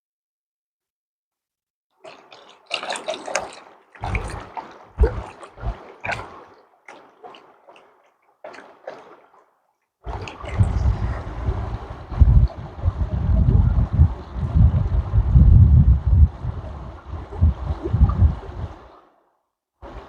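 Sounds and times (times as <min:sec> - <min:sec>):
water splashing and gurgling: 0:02.0 - 0:20.0
low thumps: 0:05.0 - 0:06.2, 0:10.1 - 0:18.8.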